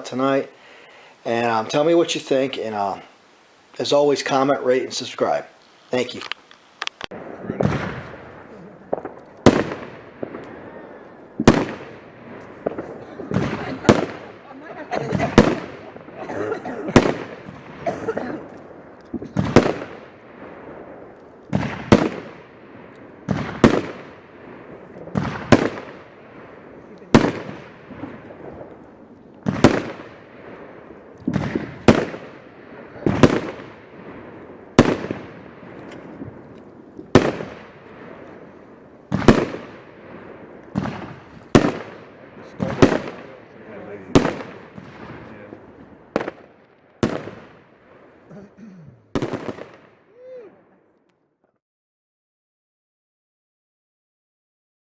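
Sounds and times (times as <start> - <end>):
firework reports with hiss: 5.4 - 46.4.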